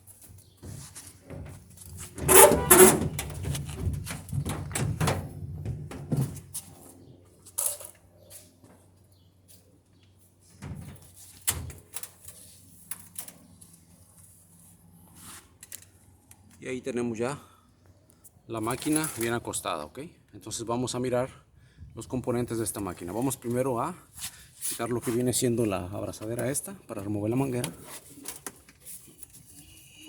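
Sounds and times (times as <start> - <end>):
washing machine scraping floor: 1.4 - 6.4.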